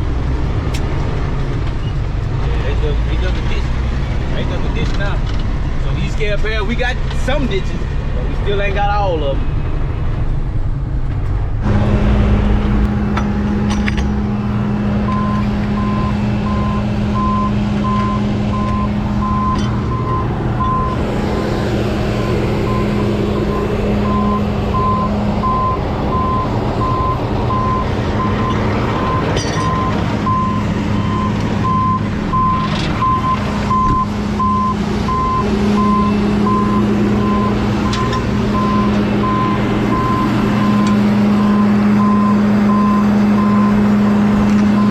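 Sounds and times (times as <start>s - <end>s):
truck engine droning: 0.0s - 44.9s
reversing alarm beeping: 15.1s - 21.0s, 22.6s - 43.8s.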